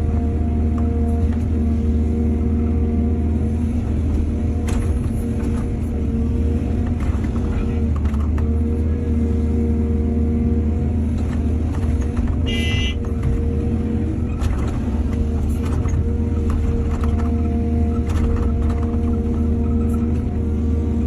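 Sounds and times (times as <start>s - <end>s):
excavator diesel engine running: 0.0s - 21.0s.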